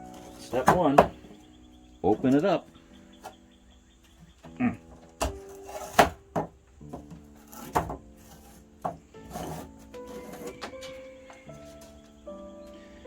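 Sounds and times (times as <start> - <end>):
window screen frame scraping: 0.0 - 1.2, 5.0 - 12.0
background music with held notes: 0.0 - 13.0
window screen frame knocks: 0.3 - 1.4, 5.1 - 8.1.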